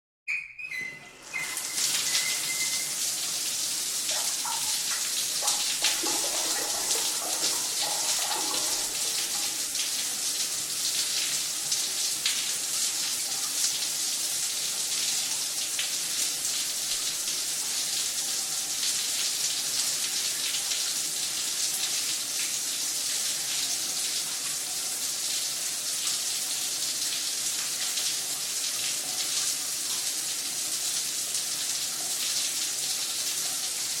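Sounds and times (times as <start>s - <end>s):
shower squeak: 0.3s - 6.0s
shower spray hissing: 1.2s - 10.0s.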